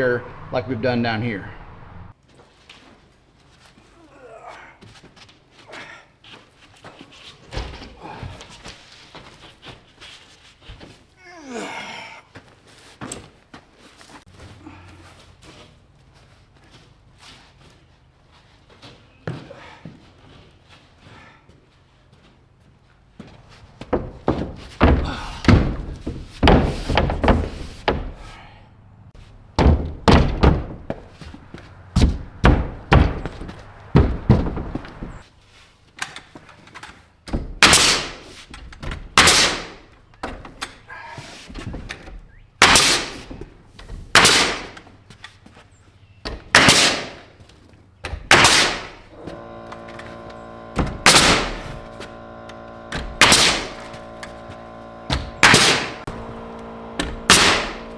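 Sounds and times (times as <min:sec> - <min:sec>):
steady multi-tone hum: 0:23.6 - 0:35.2, 0:48.2 - 0:57.9
heavy knocks on wood: 0:23.8 - 0:28.6, 0:29.2 - 0:35.2.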